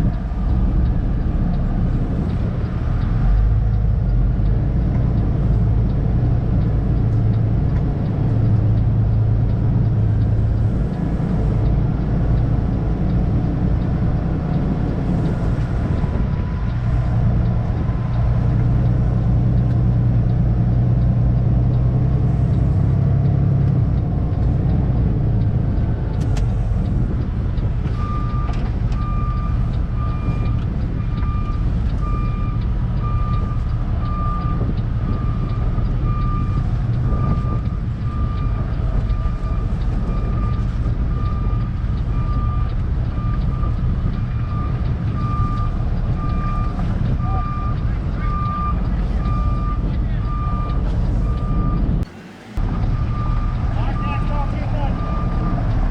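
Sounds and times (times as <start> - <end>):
diesel truck engine running: 0.0 - 55.9
reversing alarm beeping: 28.0 - 51.9, 52.6 - 55.8.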